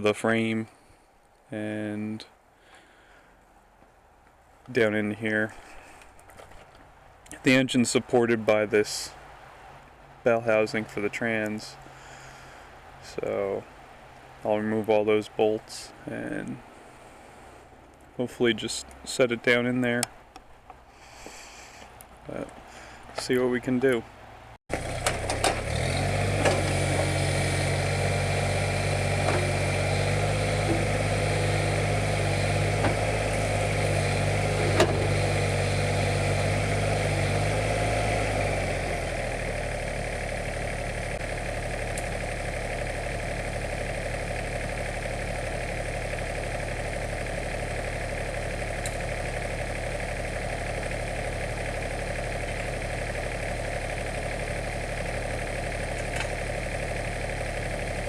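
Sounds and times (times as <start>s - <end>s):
excavator engine idling: 24.7s - 58.0s.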